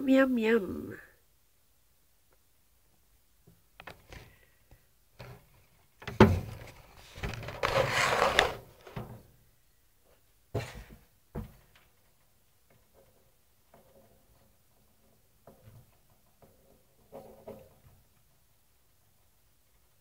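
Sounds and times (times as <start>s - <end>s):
rustling and scraping: 3.4s - 9.4s, 10.0s - 20.0s.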